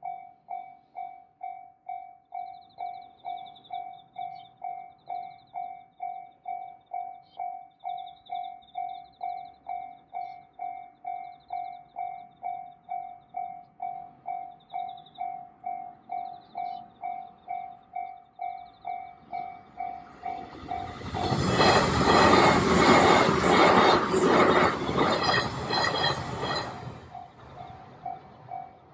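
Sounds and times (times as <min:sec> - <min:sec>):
level crossing warning bell: 0:03.8 - 0:28.9
train passing over crossing: 0:11.4 - 0:28.9.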